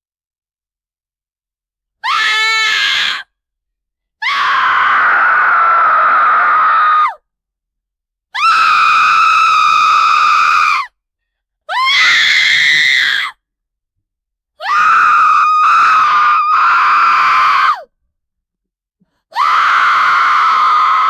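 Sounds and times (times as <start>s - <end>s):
woman screaming: 14.6s - 17.9s, 19.3s - 21.0s.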